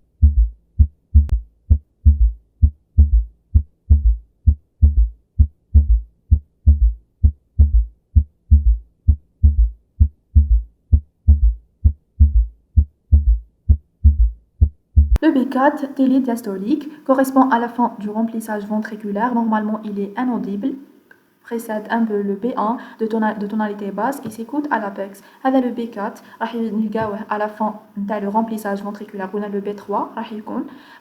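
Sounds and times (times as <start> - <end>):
heartbeat thuds: 0.0 - 15.2.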